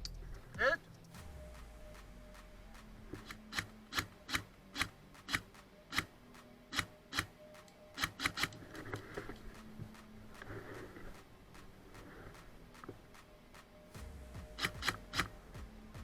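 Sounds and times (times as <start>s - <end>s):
sharp clicks: 1.9s - 13.7s, 14.6s - 15.4s.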